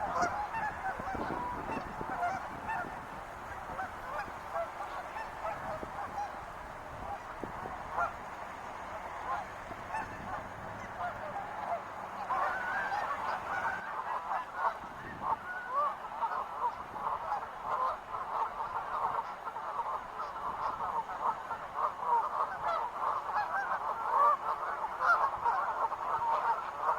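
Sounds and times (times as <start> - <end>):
geese honking: 0.0 - 14.0.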